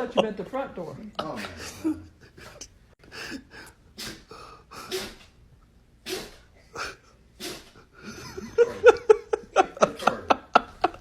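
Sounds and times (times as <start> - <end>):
dog sneezing: 3.9 - 5.4, 6.0 - 7.9.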